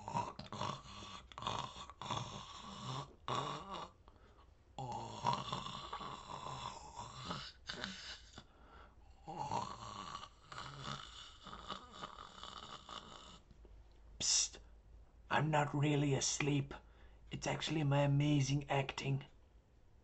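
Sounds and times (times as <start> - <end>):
man imitating snoring: 0.0 - 4.0, 4.8 - 8.5, 9.1 - 13.4.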